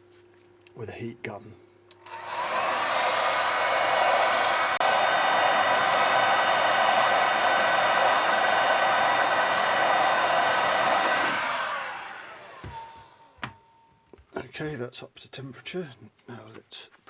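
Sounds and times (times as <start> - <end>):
heat gun fan whine: 1.9 - 14.0.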